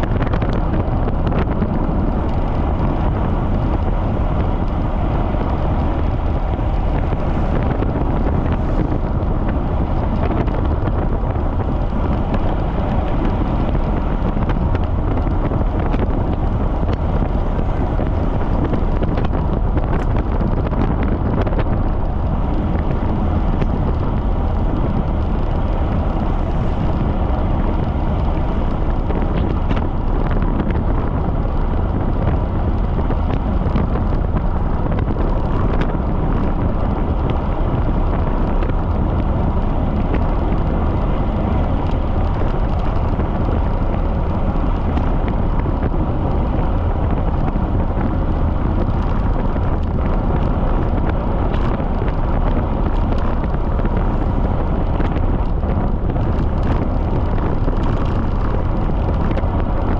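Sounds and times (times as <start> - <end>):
wind rushing on microphone: 0.0 - 59.9.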